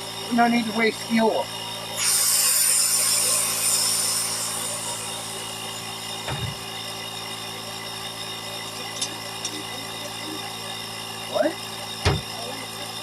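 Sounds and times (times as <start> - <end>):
air compressor running: 0.0 - 13.0
thump: 6.3 - 6.6, 12.0 - 12.3.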